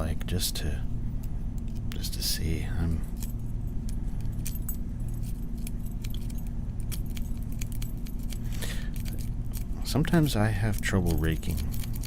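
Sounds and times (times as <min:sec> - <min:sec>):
steady low hum: 0:00.0 - 0:12.0
lock pick clicking and scraping: 0:03.1 - 0:12.0.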